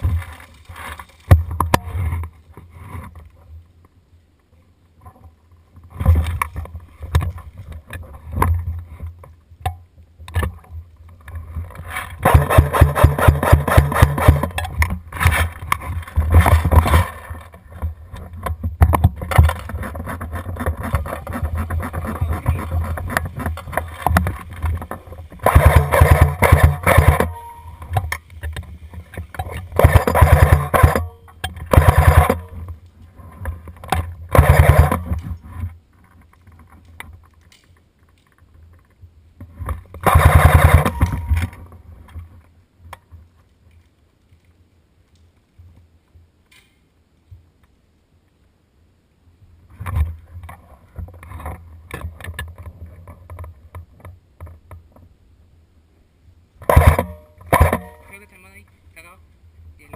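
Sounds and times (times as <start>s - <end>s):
airsoft gun full-auto bursts: 12.2s - 14.5s, 25.4s - 27.4s, 29.8s - 31.0s, 31.7s - 32.4s, 34.3s - 35.0s, 40.0s - 41.2s
faint movement noise: 14.7s - 25.4s, 27.3s - 29.8s.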